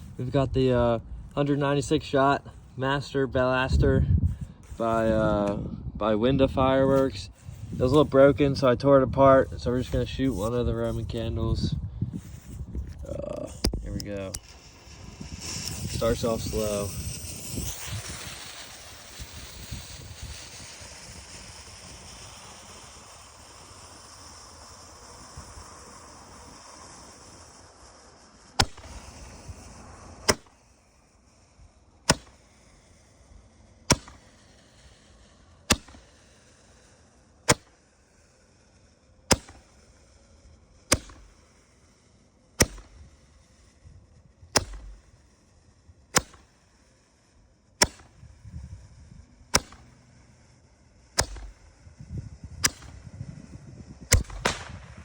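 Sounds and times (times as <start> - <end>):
firework hissing: 0.0 - 55.0
firework pops: 12.2 - 30.8, 32.0 - 32.9, 33.8 - 38.3, 39.3 - 39.9, 40.8 - 41.8, 42.6 - 43.6, 44.5 - 45.4, 46.1 - 46.6, 47.8 - 48.9, 49.5 - 50.0, 51.1 - 55.0.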